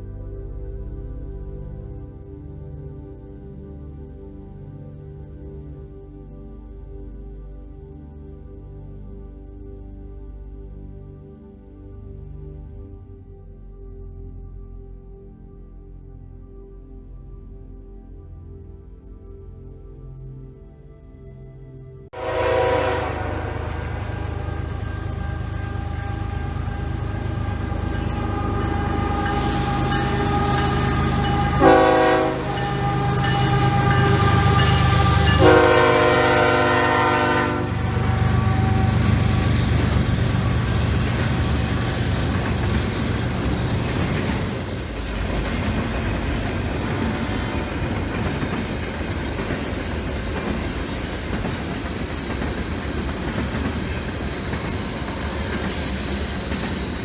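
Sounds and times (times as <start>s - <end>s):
locomotive horn blasts: 22.2s - 39.5s
high-pitched wheel squeal: 22.2s - 44.8s, 46.6s - 57.0s
train cars rumbling and clattering: 22.2s - 57.0s.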